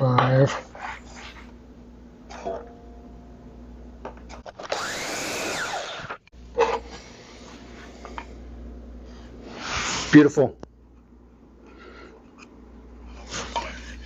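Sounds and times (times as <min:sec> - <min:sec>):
miter saw whining through cut: 0:04.5 - 0:06.2.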